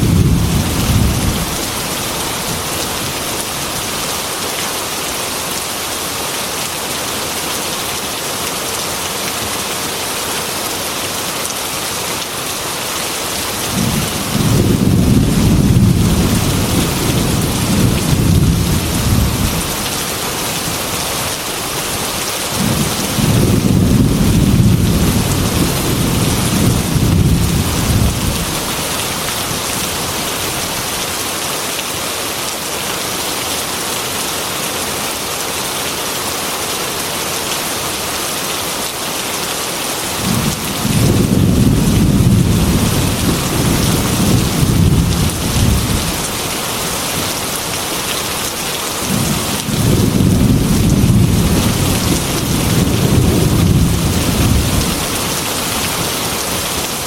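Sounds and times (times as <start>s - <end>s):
rolling thunder: 0.0s - 1.8s, 13.7s - 19.9s, 22.6s - 28.8s, 40.2s - 46.3s, 49.1s - 55.0s
heavy rain on a window: 0.0s - 57.0s.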